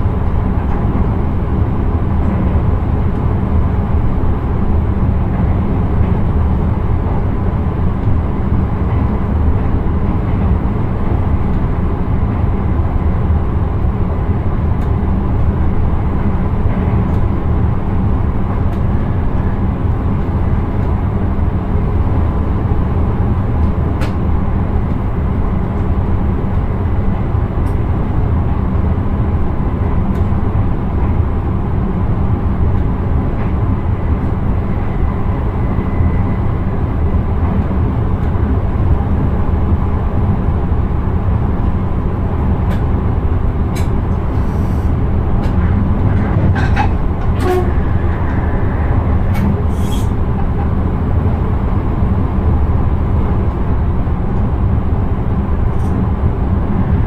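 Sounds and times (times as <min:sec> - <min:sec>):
train wheels rumbling on rails: 0:00.0 - 0:57.0.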